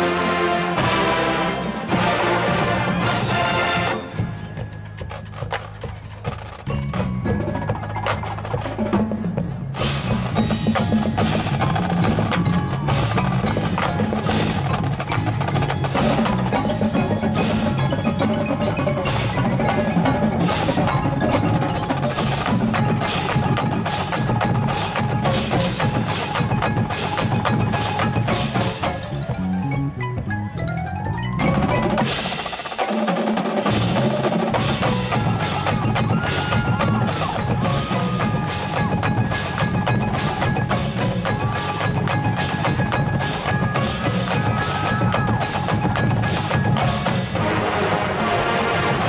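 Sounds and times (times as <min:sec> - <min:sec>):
marching band playing: 0:00.0 - 0:49.0
sharp percussion hits: 0:31.0 - 0:49.0.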